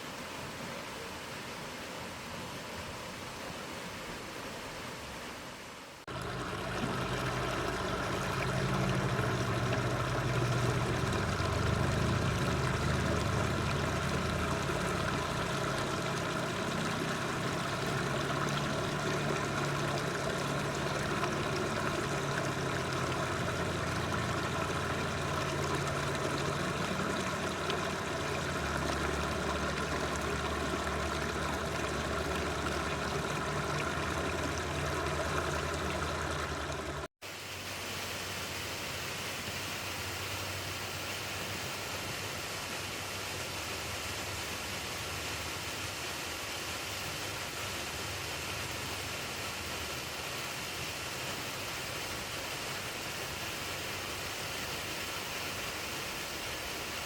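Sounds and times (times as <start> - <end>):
waterfall rushing: 6.1 - 37.1.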